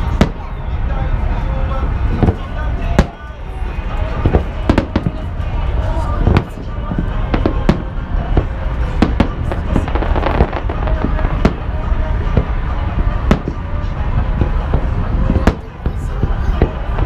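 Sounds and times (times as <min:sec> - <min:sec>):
fireworks bangs: 0:00.0 - 0:00.7, 0:01.8 - 0:17.0
constant low rumble: 0:00.0 - 0:17.0.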